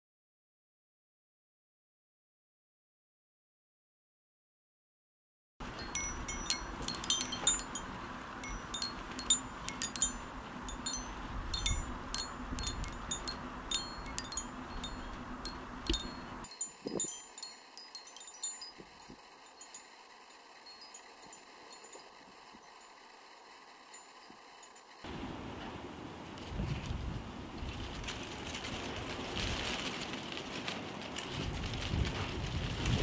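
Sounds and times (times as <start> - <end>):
wind chimes tinkling: 5.6 - 25.2.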